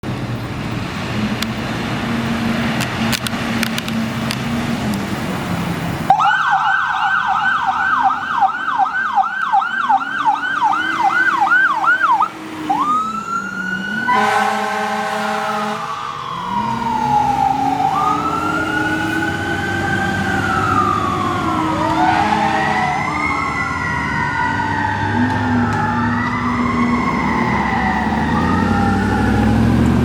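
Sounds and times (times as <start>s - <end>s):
heavy engine and road noise: 0.0s - 30.0s
fire engine yelp siren: 1.0s - 30.0s.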